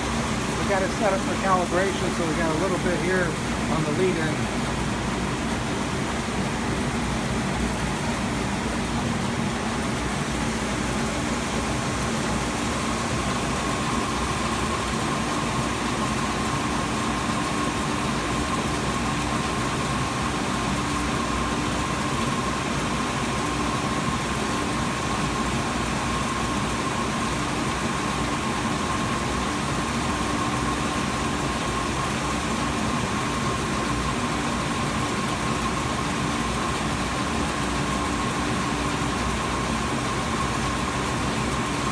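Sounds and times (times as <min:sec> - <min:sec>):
belt sander running: 0:00.0 - 0:17.5
high machine whine: 0:00.0 - 0:41.9.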